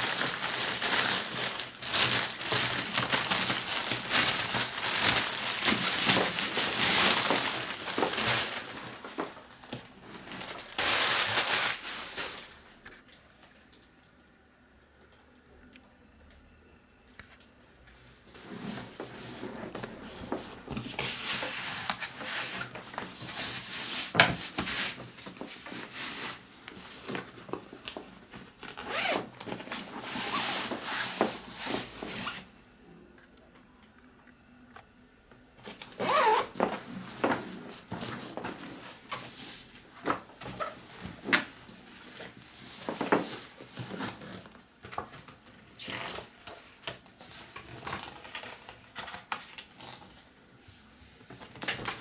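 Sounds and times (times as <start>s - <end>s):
bag rustling: 0.0s - 12.7s, 36.0s - 44.5s
zippers pulled open and shut: 28.8s - 31.2s, 36.0s - 36.6s.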